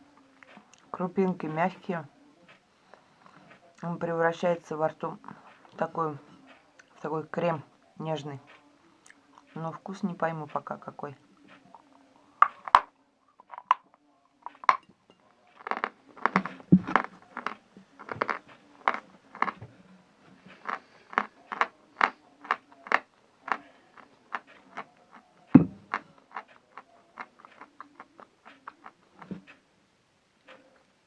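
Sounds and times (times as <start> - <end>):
wet chewing clicks: 11.4 - 14.9, 15.6 - 19.7, 20.4 - 29.6
low thud: 25.6 - 25.8.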